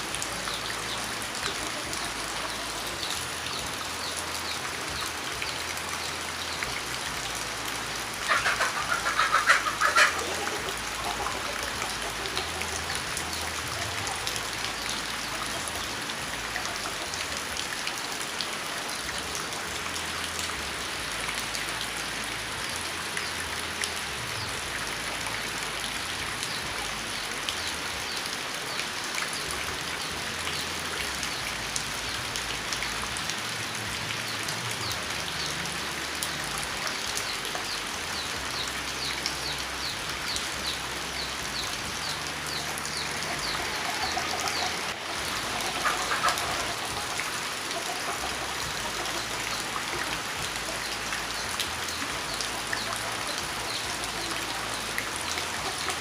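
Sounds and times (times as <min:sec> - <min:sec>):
steady rain falling: 0:00.0 - 0:56.0
loud fowl call: 0:08.3 - 0:11.5.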